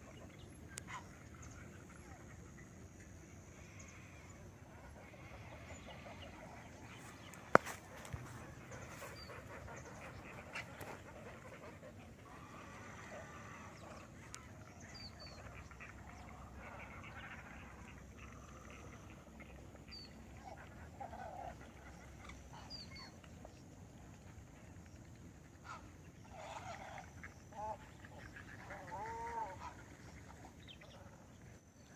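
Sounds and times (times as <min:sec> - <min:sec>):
distant bird calls: 0:00.0 - 0:23.8.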